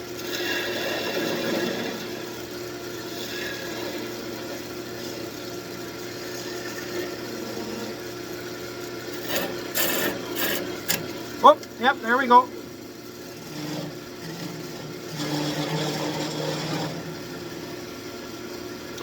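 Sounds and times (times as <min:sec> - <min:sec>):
gouge cutting spinning wood: 0:09.1 - 0:12.5, 0:13.3 - 0:17.8
wood lathe running: 0:09.1 - 0:12.5, 0:13.3 - 0:17.8.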